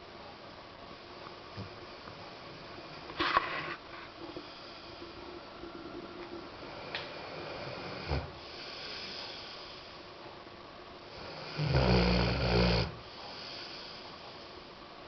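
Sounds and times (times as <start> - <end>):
soft breathing: 2.1 - 10.2, 13.0 - 14.8
pet snoring: 6.5 - 9.4, 11.1 - 14.0.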